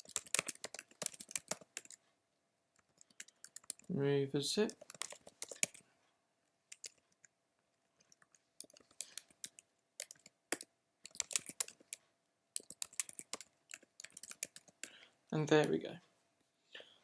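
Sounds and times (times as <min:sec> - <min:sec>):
computer keyboard typing: 0:00.0 - 0:02.0, 0:02.8 - 0:03.9, 0:04.7 - 0:05.8, 0:06.7 - 0:07.3, 0:08.0 - 0:12.0, 0:12.6 - 0:15.0.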